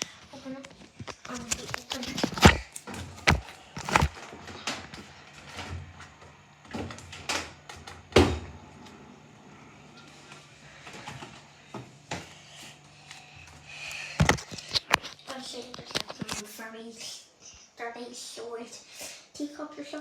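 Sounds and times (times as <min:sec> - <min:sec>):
steady low hum: 0:00.0 - 0:16.8
dishwasher door and racks clattering: 0:02.2 - 0:08.6.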